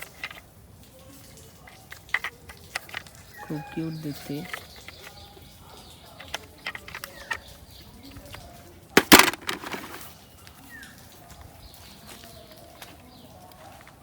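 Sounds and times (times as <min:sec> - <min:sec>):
rustling clatter: 0:00.0 - 0:00.5, 0:09.0 - 0:10.1.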